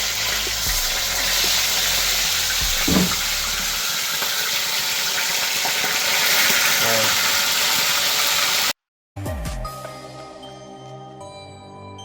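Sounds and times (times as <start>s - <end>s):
fish sizzling in a frying pan: 0.0s - 8.8s
short knock: 2.8s - 3.3s.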